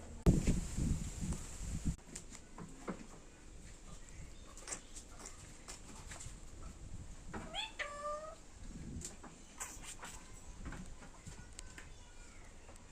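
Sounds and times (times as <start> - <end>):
parrot meow-like call: 7.5 - 8.4.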